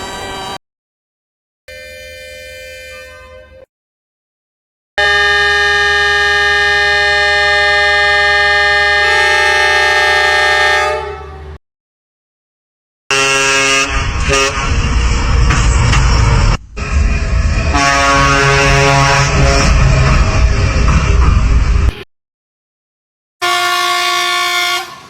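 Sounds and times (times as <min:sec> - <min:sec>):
train horn chord: 0:05.0 - 0:11.6, 0:13.1 - 0:14.6, 0:17.7 - 0:19.8, 0:23.4 - 0:25.0
heavy noisy rumble: 0:13.6 - 0:22.0.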